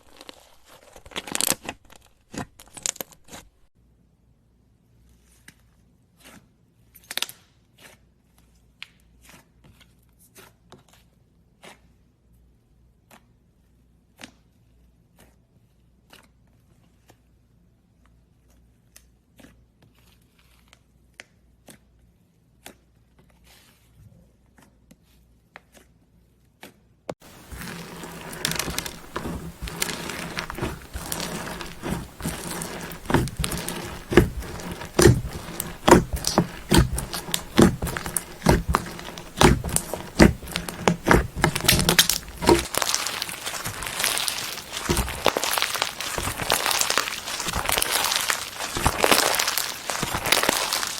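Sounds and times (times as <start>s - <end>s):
slime squished by hand: 27.2s - 50.9s.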